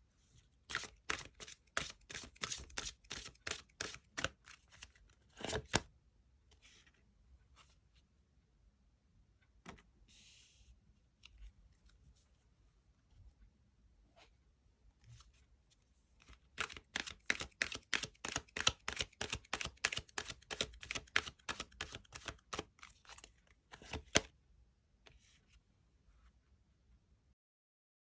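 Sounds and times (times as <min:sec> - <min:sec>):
cards being shuffled: 0:00.7 - 0:05.8, 0:16.2 - 0:24.3.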